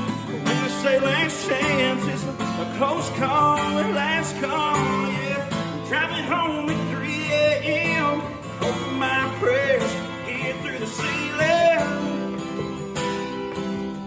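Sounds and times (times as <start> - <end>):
person singing: 0.0 - 13.0
country band playing live: 0.0 - 14.0.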